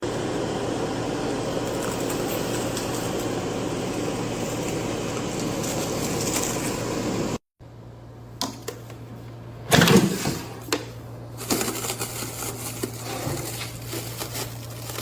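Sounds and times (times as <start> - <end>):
air fryer fan whirring: 0.0 - 15.0.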